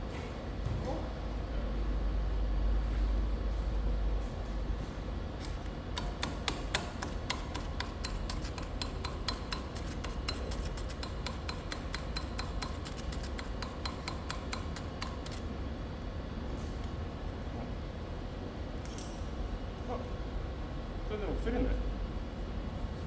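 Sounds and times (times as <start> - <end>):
sharp metallic ticks: 6.0 - 15.4.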